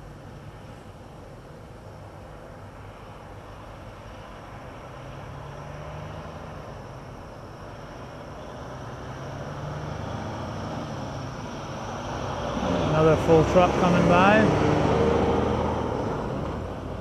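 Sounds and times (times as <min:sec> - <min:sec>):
truck engine approaching: 0:03.4 - 0:17.0.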